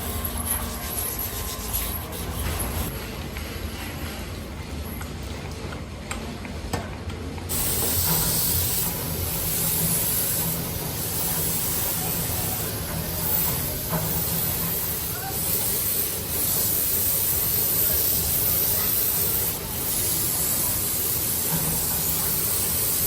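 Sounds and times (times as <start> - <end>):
loud spray jet hiss: 7.5 - 23.0.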